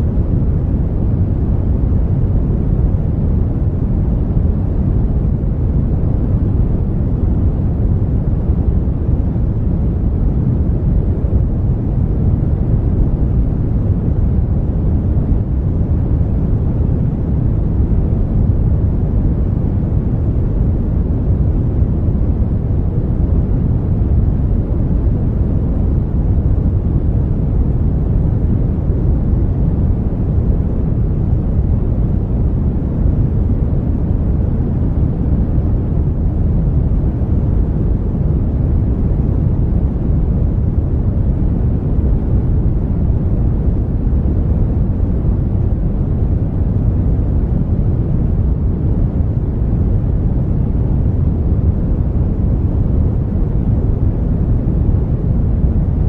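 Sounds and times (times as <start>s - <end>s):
deep rushing brown noise: 0.0s - 56.0s.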